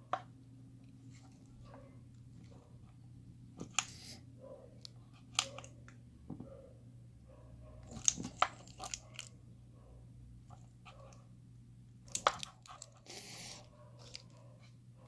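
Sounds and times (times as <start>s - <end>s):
steady low hum: 0.0s - 15.0s
lock and key clicks: 5.3s - 5.8s.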